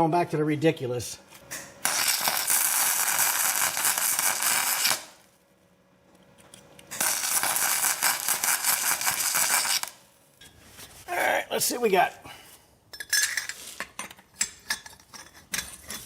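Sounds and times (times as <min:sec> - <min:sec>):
welder crackling buzz: 0:01.8 - 0:05.4, 0:06.9 - 0:10.2.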